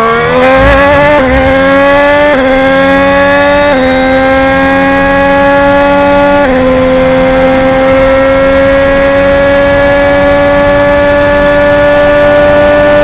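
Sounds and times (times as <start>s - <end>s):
racing car engine at high revs: 0.0s - 13.0s.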